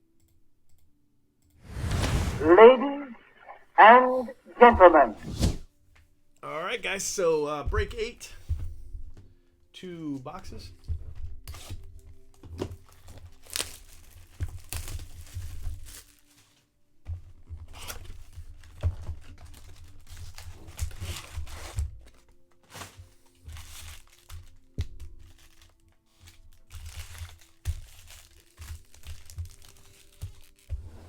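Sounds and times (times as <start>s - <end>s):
faint background music: 0.0s - 31.0s
wrappers tearing and crinkling: 11.5s - 16.7s, 17.7s - 31.0s.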